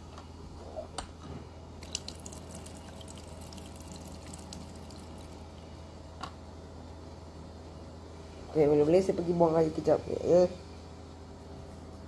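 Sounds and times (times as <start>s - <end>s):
steady low hum: 0.0s - 12.0s
water dripping: 1.8s - 5.4s.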